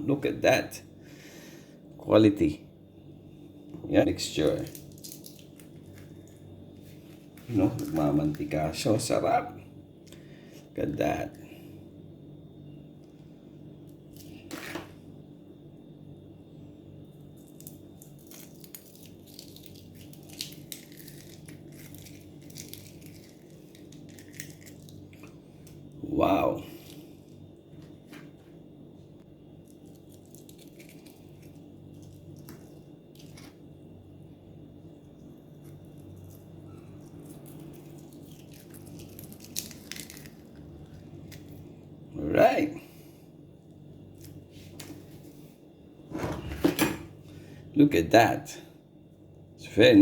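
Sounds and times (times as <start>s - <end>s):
steady low hum: 0.0s - 50.0s
utensil squishing egg mixture: 17.2s - 26.0s, 29.4s - 42.0s.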